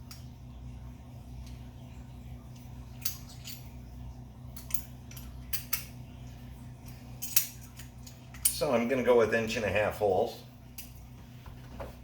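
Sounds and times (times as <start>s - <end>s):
low steady hum: 0.0s - 12.0s
metal tools clicking and clinking: 4.6s - 5.9s, 6.8s - 8.6s.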